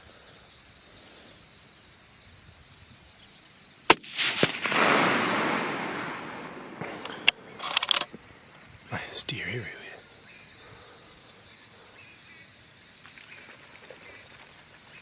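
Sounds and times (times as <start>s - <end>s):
rifle shot: 3.9s - 8.1s
rolling echo: 3.9s - 8.1s
faint crack: 3.9s - 8.2s, 13.0s - 15.0s.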